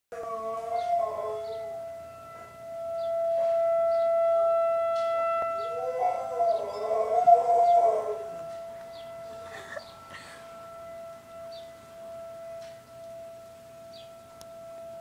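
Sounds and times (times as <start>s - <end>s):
dog howling: 0.1s - 1.8s, 5.6s - 8.5s
warning siren steady tone: 0.1s - 15.0s.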